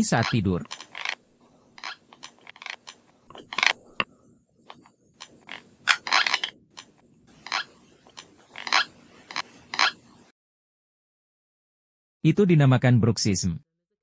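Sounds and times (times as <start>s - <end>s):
teeth grinding: 0.2s - 1.2s, 1.8s - 4.1s, 4.7s - 10.0s.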